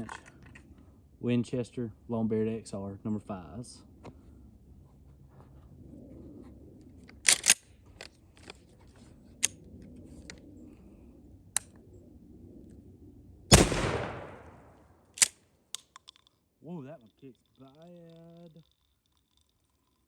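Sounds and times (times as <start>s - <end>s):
shotgun blast: 13.5s - 14.8s.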